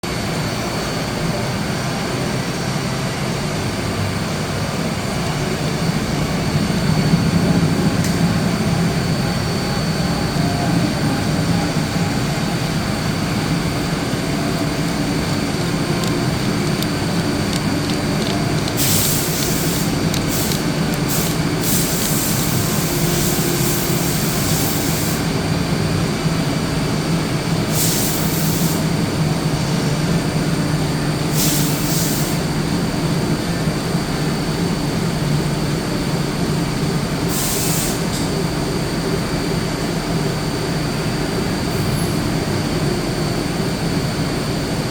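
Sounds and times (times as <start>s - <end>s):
sharp hiss: 18.8s - 25.3s, 27.7s - 28.9s, 31.3s - 32.4s, 37.3s - 38.2s.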